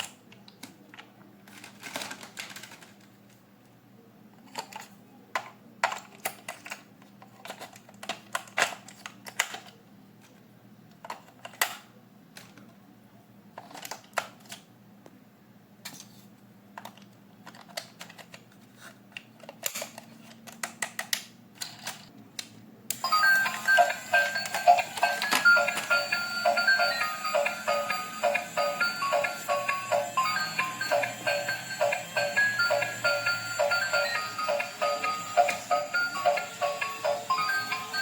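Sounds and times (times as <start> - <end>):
hands handling toy packaging: 0.0 - 3.4.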